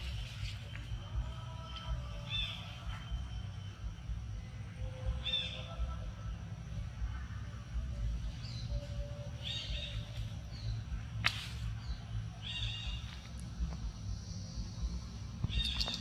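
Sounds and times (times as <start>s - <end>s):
low rumble: 0.0s - 16.0s
high-pitched animal calls: 15.4s - 16.0s.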